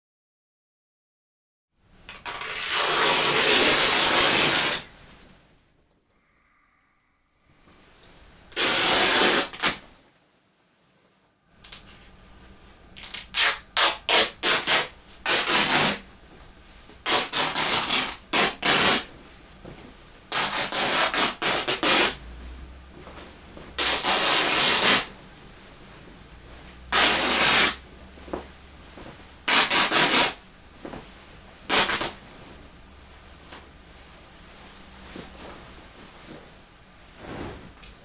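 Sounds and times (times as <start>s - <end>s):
fabric ripping: 2.1s - 5.0s, 8.5s - 9.9s, 13.0s - 16.2s, 17.0s - 19.1s, 20.3s - 25.6s, 26.4s - 33.7s.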